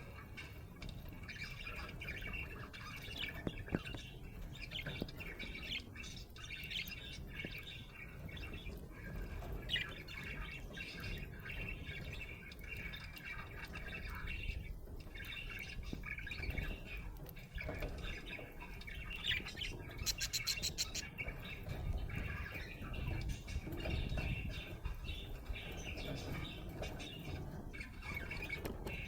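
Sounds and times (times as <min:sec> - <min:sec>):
budgerigar chirping and chattering: 0:18.4 - 0:27.3.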